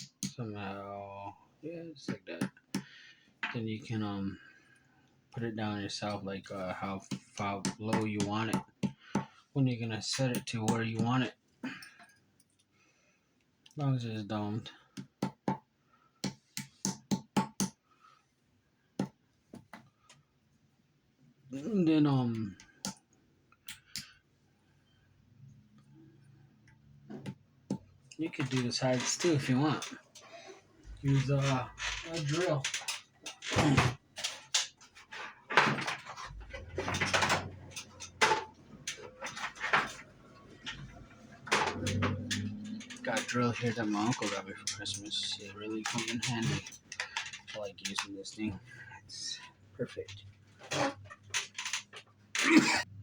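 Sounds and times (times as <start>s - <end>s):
tools rustling and knocking: 27.0s - 48.5s, 49.4s - 52.8s.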